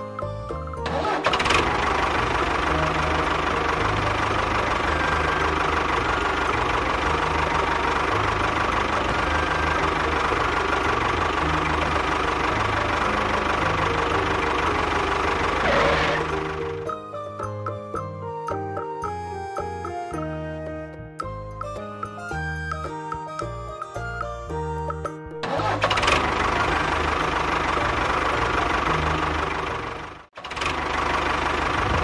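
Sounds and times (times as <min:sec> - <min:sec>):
machine engine running: 0:00.9 - 0:16.9, 0:25.4 - 0:32.0.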